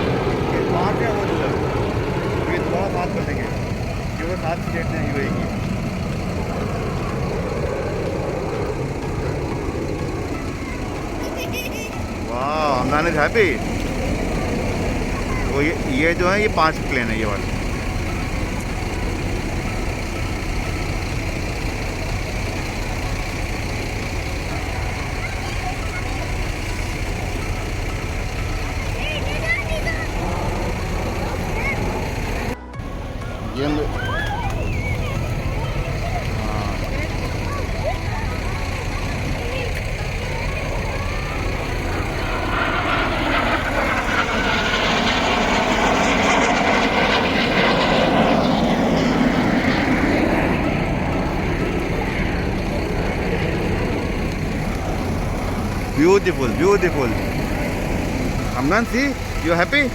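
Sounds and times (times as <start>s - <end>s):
aircraft flying overhead: 0.0s - 59.9s
jet engines rumbling: 0.0s - 59.9s.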